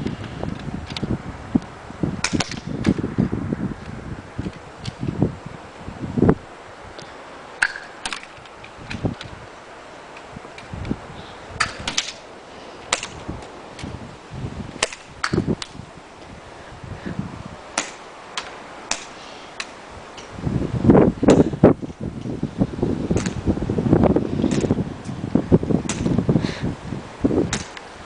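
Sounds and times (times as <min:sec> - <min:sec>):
airsoft guns firing pops: 0:02.2 - 0:03.0, 0:11.6 - 0:12.2, 0:12.9 - 0:13.2, 0:14.8 - 0:15.8, 0:17.8 - 0:19.8, 0:27.5 - 0:27.8.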